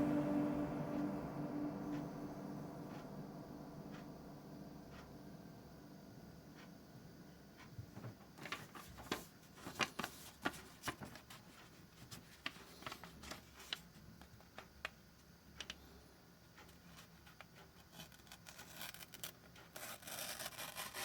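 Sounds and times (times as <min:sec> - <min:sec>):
knife slicing paper: 0:18.4 - 0:21.0.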